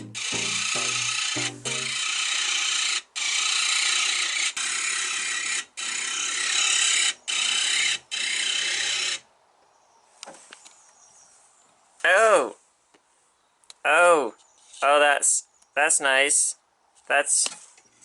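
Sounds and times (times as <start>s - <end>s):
harsh rasping mechanical noise: 0.0s - 2.6s.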